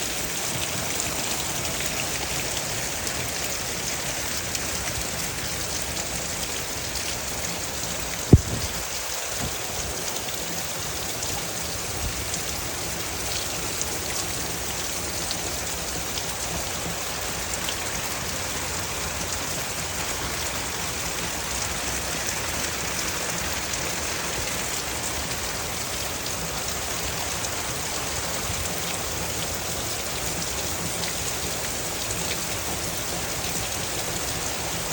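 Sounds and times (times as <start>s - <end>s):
rain falling: 0.0s - 34.9s
sharp knock: 8.3s - 8.8s.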